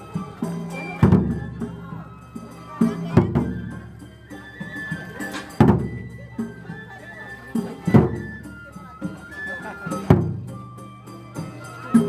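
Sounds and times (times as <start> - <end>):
traditional festival music: 0.0 - 12.0
voices: 0.0 - 12.0
taiko drum strikes: 0.4 - 1.9, 2.8 - 4.0, 4.6 - 6.8, 7.8 - 8.6, 10.0 - 10.8.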